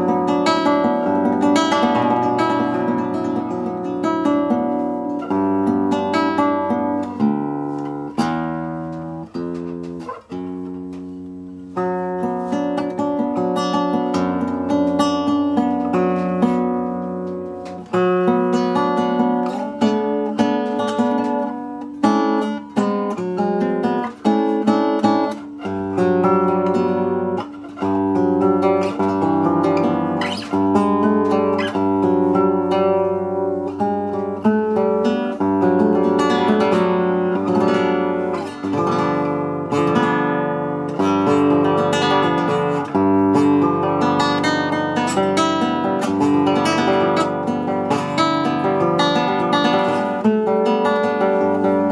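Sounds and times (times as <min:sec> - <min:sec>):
acoustic guitar plucked chords: 0:00.0 - 0:51.9.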